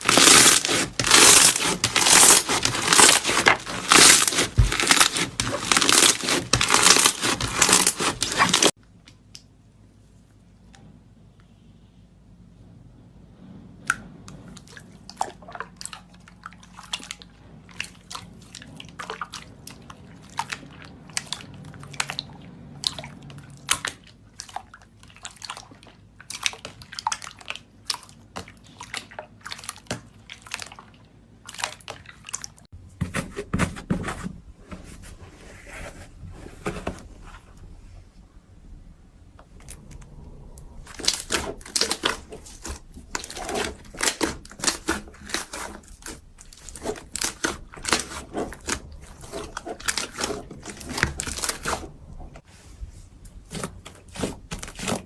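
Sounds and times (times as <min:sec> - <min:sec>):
slime squeezed by hand crackling: 0:00.0 - 0:08.7
deeper slime squelching: 0:00.0 - 0:09.4, 0:13.7 - 0:55.0.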